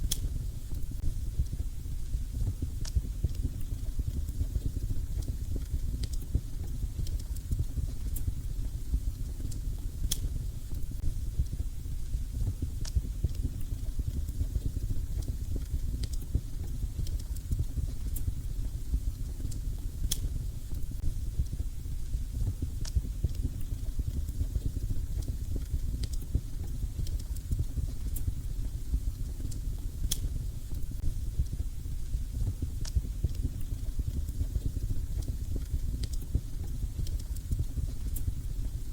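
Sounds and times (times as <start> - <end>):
fire burning low rumble: 0.0 - 38.9
fire crackling and popping: 0.0 - 38.9.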